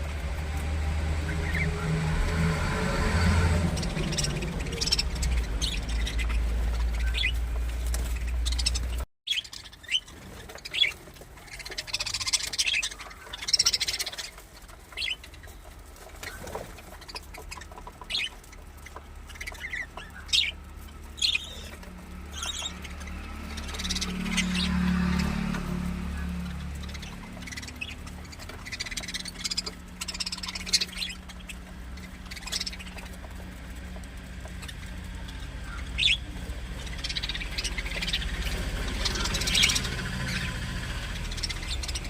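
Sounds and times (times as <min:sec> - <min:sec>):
low rumble: 0:00.0 - 0:09.0
birds chirping: 0:00.0 - 0:42.0.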